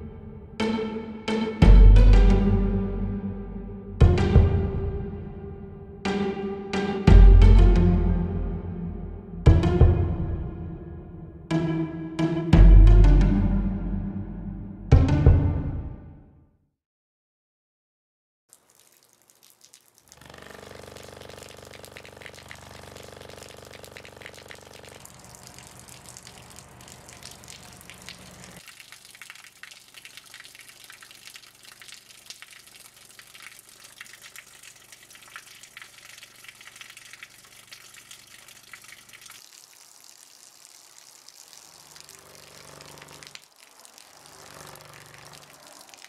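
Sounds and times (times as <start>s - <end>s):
water rushing: 18.6s - 46.0s.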